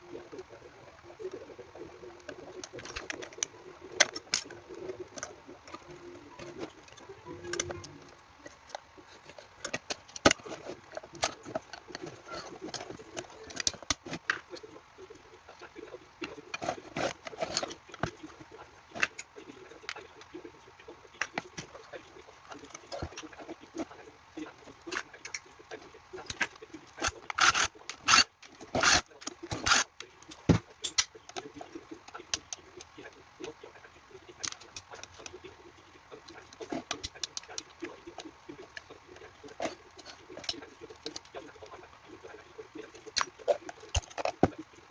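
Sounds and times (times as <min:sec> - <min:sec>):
clicks and taps of small parts: 0:02.2 - 0:14.6, 0:24.7 - 0:33.6, 0:43.0 - 0:44.6.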